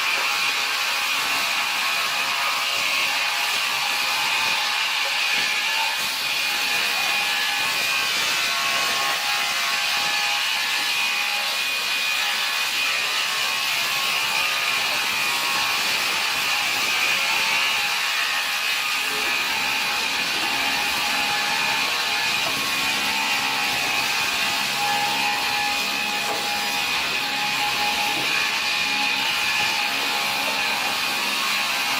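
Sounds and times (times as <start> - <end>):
saw cutting through timber: 0.0 - 31.9.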